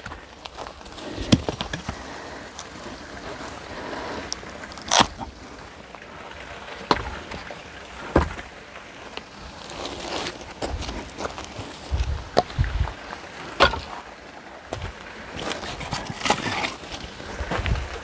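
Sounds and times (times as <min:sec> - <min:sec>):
steady background noise: 0:00.0 - 0:18.0
hatchet chopping firewood: 0:01.2 - 0:02.0, 0:04.8 - 0:05.3, 0:06.8 - 0:07.3, 0:08.1 - 0:08.4, 0:13.6 - 0:14.0.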